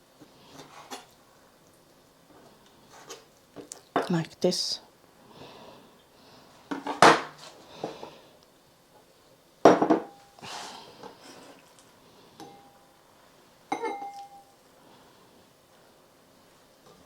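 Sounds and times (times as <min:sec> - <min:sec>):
kitchenware knocking and clinking: 0:09.6 - 0:10.2, 0:13.7 - 0:14.4
struck bowl ringing: 0:13.7 - 0:14.5.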